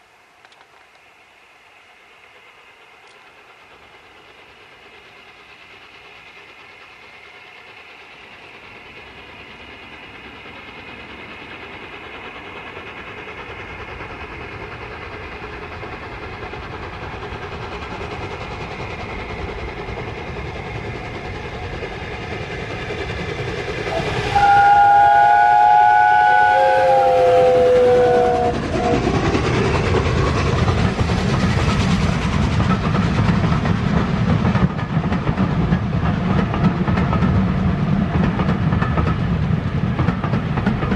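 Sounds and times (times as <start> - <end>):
steam locomotive rumble: 0.0 - 40.9
train chime whistle: 23.9 - 28.9.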